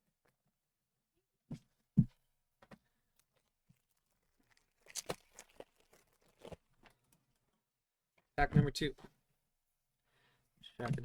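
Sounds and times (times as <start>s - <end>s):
foil wrapper tearing open: 3.8s - 6.6s.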